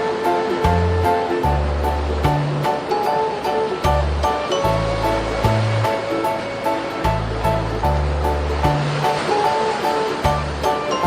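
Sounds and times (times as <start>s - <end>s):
background music with bass line: 0.0s - 3.0s, 3.8s - 9.3s, 10.2s - 11.0s
sea waves on a beach: 0.0s - 11.0s.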